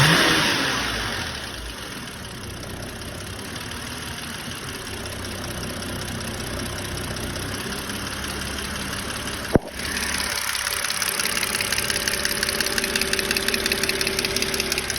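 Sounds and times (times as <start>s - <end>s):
car engine idling: 1.3s - 14.9s
fast hard ticking: 9.4s - 14.9s.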